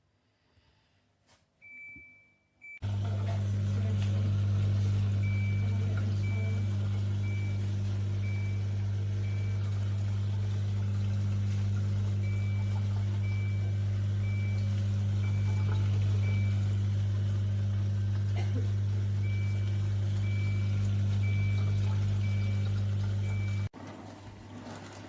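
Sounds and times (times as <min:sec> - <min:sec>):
dishwasher motor humming: 0:02.8 - 0:25.0.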